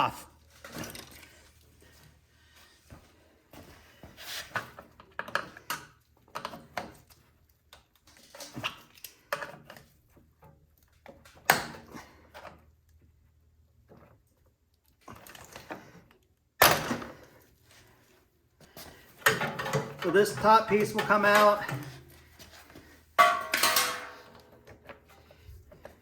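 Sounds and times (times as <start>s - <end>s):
hand tools knocking and scraping: 19.2s - 25.2s.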